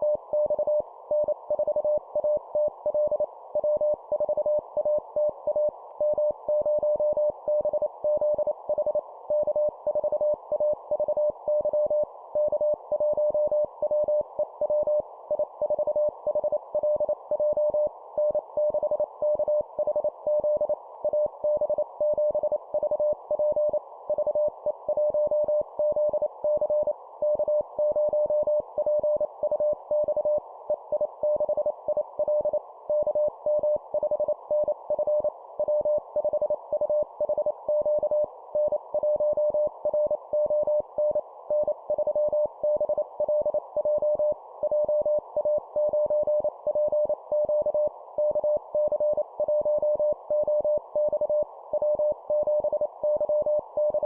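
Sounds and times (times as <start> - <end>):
morse code beeps: 31.0 - 54.0.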